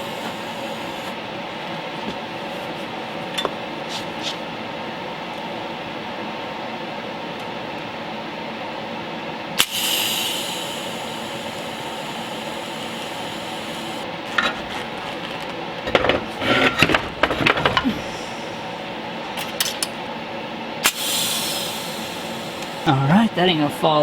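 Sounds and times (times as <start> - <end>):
welding arc hissing crackle: 0.0 - 1.3, 9.6 - 15.6, 20.8 - 23.5
sharp clicks and knocks: 14.3 - 17.9.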